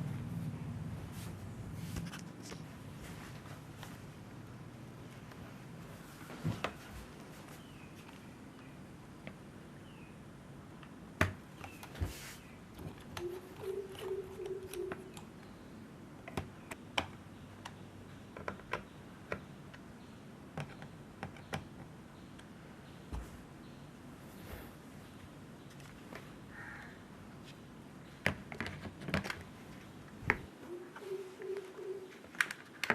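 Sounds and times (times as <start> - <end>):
plastic and metal parts clicking: 32.3 - 32.9.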